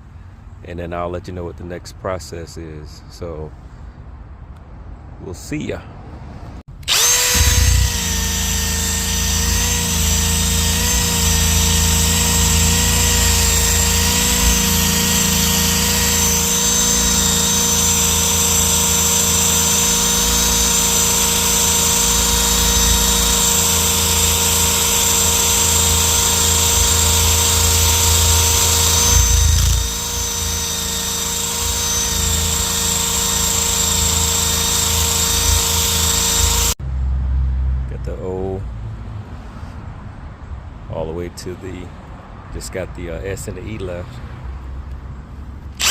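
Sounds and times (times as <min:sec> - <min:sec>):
drill motor whining under load: 0:06.8 - 0:36.8.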